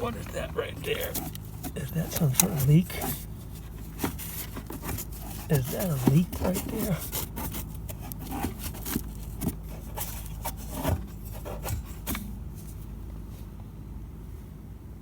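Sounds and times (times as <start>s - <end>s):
hands rubbing on panel: 0.0s - 12.2s
fan humming: 0.0s - 15.0s.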